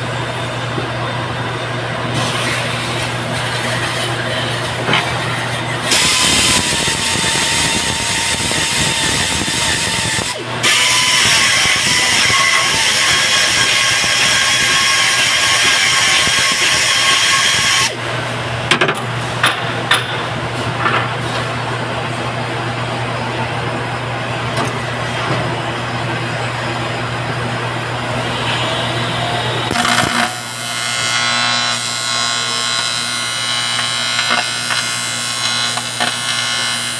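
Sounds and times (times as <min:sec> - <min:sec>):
welder low hum: 0:00.0 - 0:18.5, 0:27.8 - 0:36.9
welding arc buzzing and hissing: 0:02.2 - 0:18.1, 0:29.7 - 0:36.9.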